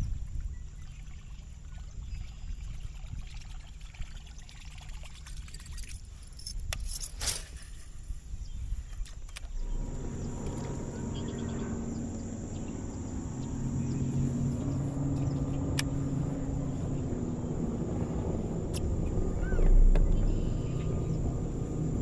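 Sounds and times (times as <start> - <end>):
boat motor humming: 9.3 - 22.0
low thump: 18.2 - 21.5.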